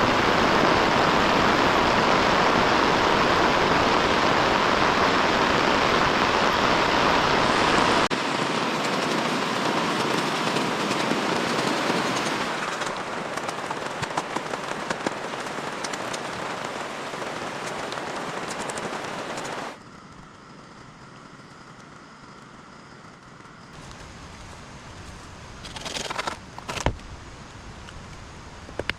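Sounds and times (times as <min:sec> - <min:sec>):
heavy rain hissing: 0:00.0 - 0:19.8, 0:23.7 - 0:28.9
rain drops ticking: 0:00.0 - 0:19.8.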